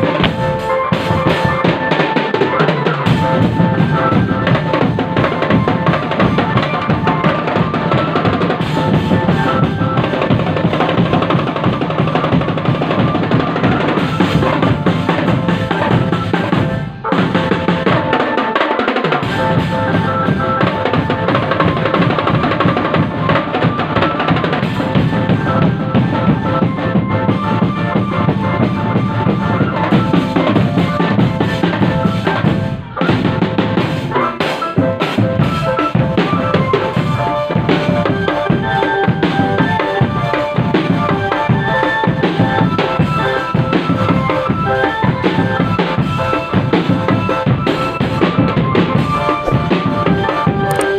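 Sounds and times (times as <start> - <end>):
bass and snare drums beating: 0.0 - 50.9
held melody line: 0.0 - 50.9
marching drum band playing: 0.0 - 50.9.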